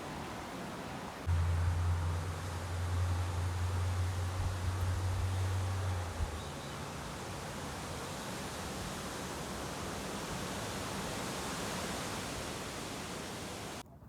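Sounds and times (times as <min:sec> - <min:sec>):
strong wind blowing: 0:04.1 - 0:13.8.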